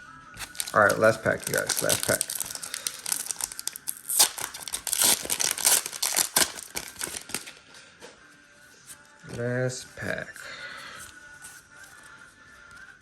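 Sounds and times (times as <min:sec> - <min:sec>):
foil wrapper crinkling: 0:00.4 - 0:07.6.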